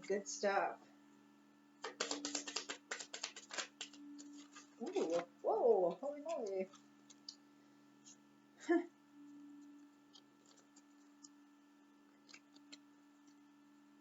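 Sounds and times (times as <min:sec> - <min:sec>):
cards clicking on a table: 0:01.8 - 0:04.0.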